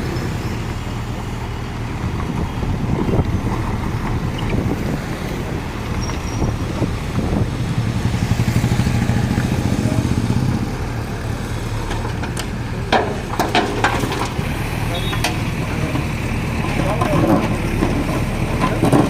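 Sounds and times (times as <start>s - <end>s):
diesel engine revving: 0.0s - 19.0s.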